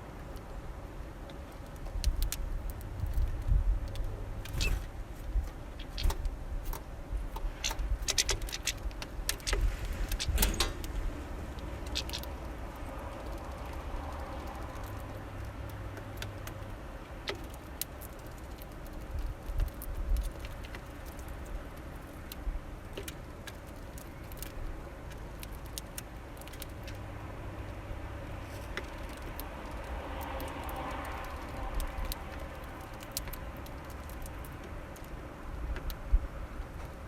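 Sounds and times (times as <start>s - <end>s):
bird feet on feeder: 1.6s - 16.6s
beaks tapping on seed: 11.5s - 27.0s, 27.6s - 35.2s.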